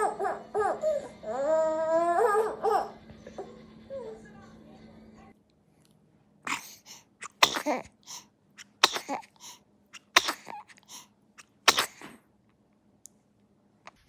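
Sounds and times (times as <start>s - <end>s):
baby sneezing: 6.5s - 12.2s
baby sneezy breaths: 6.5s - 12.2s.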